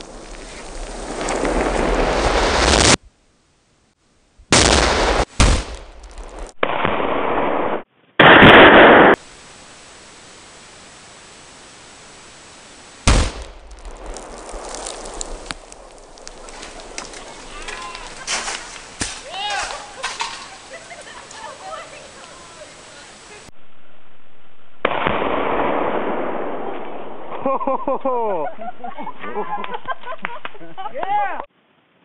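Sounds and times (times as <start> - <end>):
explosion blasts: 0.0 - 3.0, 4.5 - 9.2, 13.0 - 19.3, 23.6 - 27.5
steady hiss: 0.0 - 6.6, 9.0 - 23.5
sharp bangs: 4.5 - 9.2, 13.0 - 20.4.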